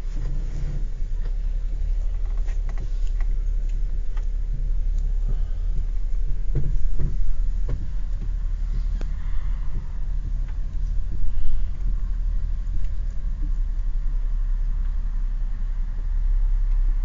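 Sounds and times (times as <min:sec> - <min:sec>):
car engine rumble inside cabin: 0:00.0 - 0:17.0
faint clicks and knocks: 0:01.2 - 0:13.9.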